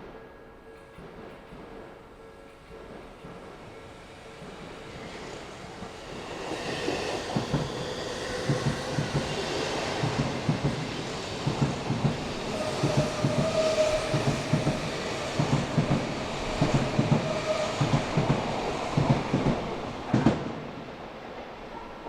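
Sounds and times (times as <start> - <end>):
train wheels clacking over rail joints: 10.0 - 20.6.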